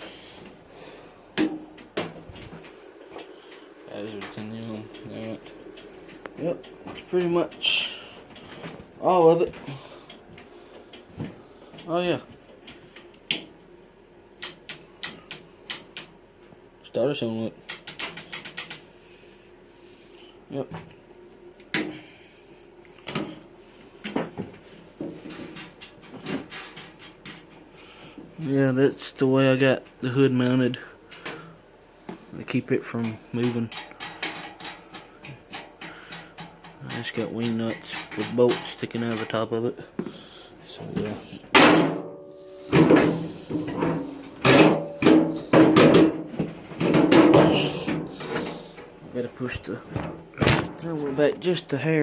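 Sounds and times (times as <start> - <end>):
metal clunks and rattles: 42.7 - 48.9.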